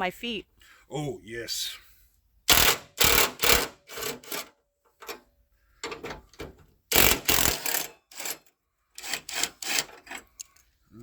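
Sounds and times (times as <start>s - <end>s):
impact wrench bursts: 2.5s - 4.5s, 6.9s - 8.4s, 9.0s - 10.2s.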